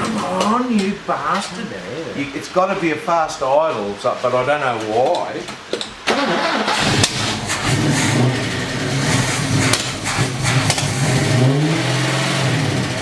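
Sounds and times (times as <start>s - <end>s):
car engine fast idle: 6.1s - 13.0s
sharp engine ticks: 7.0s - 11.6s.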